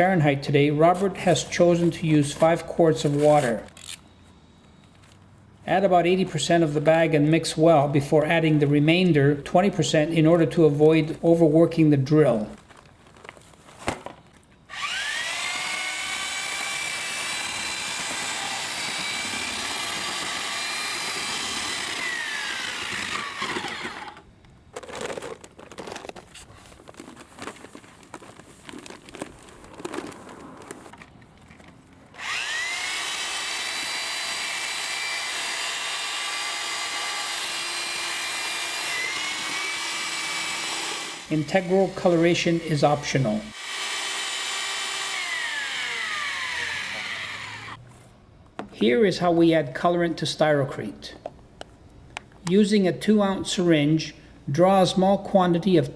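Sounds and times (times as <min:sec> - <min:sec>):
electric drill mixing: 0:14.7 - 0:24.3, 0:32.2 - 0:42.7, 0:43.4 - 0:47.8.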